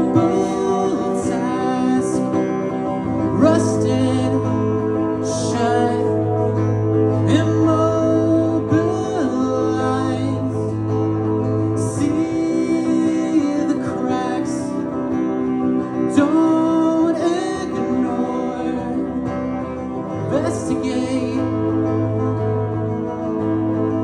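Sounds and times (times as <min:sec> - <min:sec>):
person singing: 0:00.0 - 0:06.5, 0:07.2 - 0:10.9, 0:11.5 - 0:15.1, 0:16.1 - 0:19.5, 0:20.2 - 0:21.8
guitar: 0:00.0 - 0:24.0.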